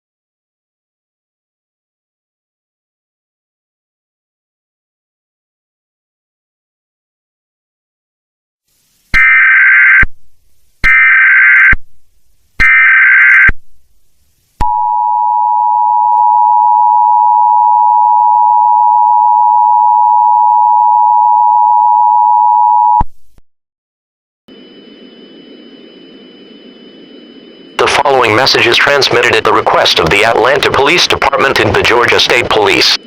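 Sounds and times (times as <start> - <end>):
faint hum: 13.5 - 23.4, 24.5 - 33.0.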